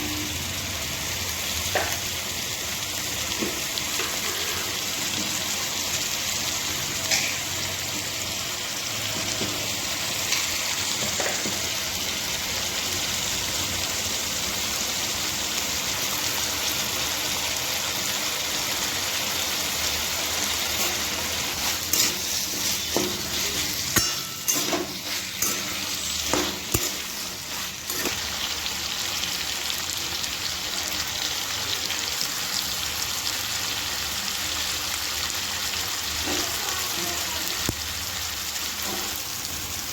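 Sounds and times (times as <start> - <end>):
food sizzling in hot oil: 0.0 - 39.9.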